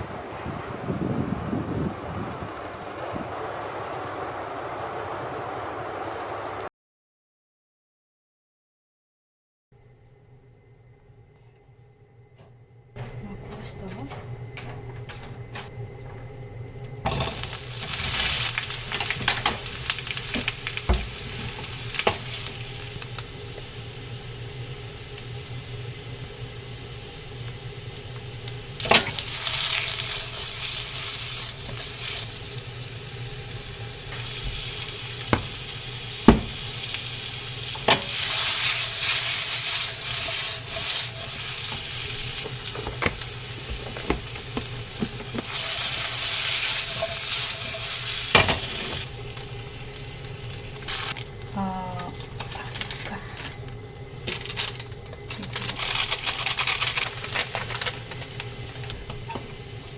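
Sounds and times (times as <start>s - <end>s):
utensil knocking on pan: 13.0s - 16.3s, 20.4s - 22.3s, 35.3s - 36.8s, 37.8s - 38.3s, 42.7s - 45.6s
food sizzling in a frying pan: 17.0s - 59.9s.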